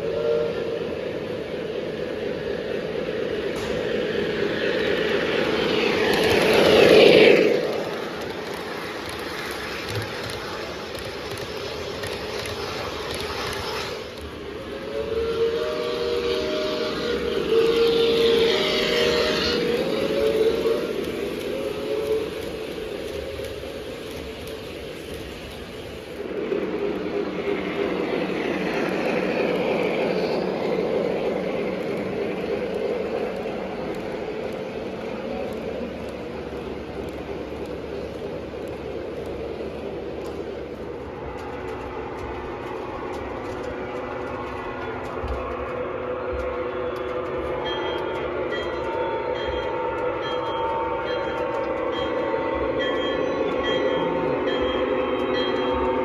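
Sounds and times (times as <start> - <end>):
model train rolling rumble: 0.0 - 56.0
electronic train horn chord: 14.8 - 21.0.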